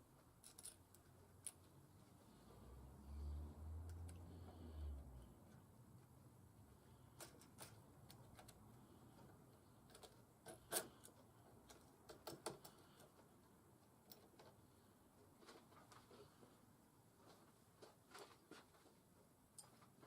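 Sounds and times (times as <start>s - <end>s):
faint clicks and knocks: 7.2s - 16.6s.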